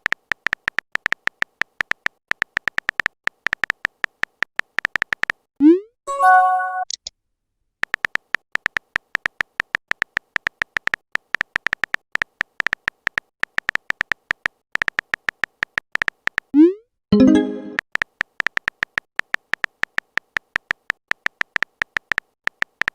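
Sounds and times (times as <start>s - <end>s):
electronic typing ticks: 0.0s - 5.5s, 7.8s - 16.7s, 17.3s - 22.9s
message alert chime: 6.1s - 6.9s, 17.2s - 17.8s.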